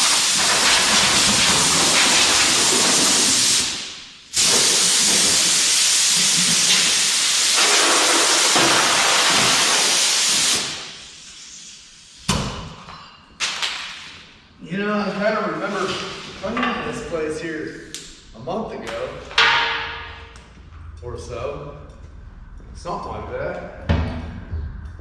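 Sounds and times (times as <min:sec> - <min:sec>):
compressed air blow gun hissing: 0:00.0 - 0:12.3.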